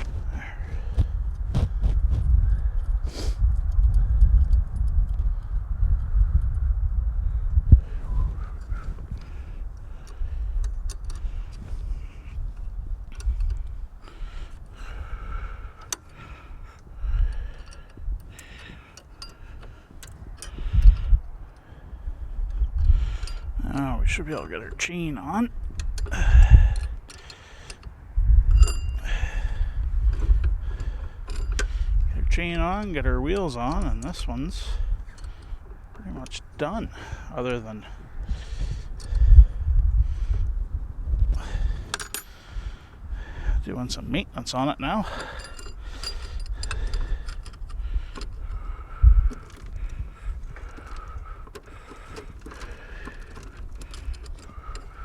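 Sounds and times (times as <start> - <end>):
low rumble: 0.0 - 14.1
metal parts clinking: 28.5 - 36.4, 41.5 - 42.5, 44.6 - 55.0.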